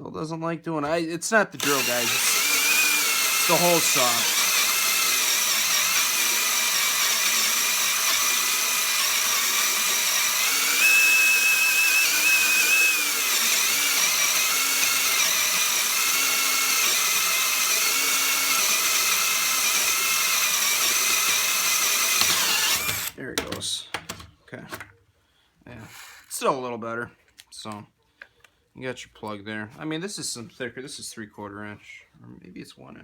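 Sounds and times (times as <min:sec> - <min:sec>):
hammer drill motor whine: 0:01.6 - 0:23.2.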